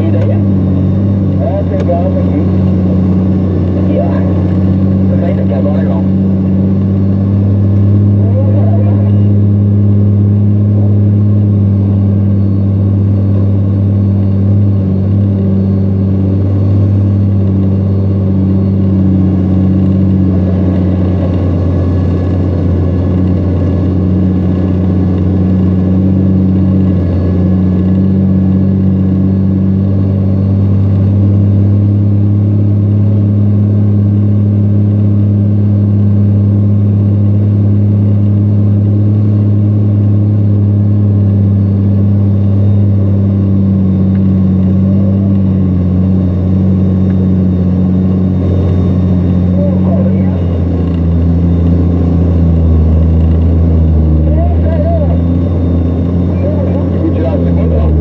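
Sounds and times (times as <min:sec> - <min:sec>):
truck diesel engine roaring: 0:00.0 - 0:58.0.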